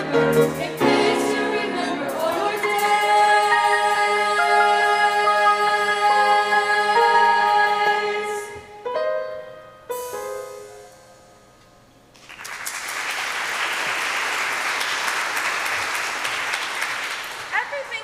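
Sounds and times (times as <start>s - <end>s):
audience applauding: 12.2s - 18.0s.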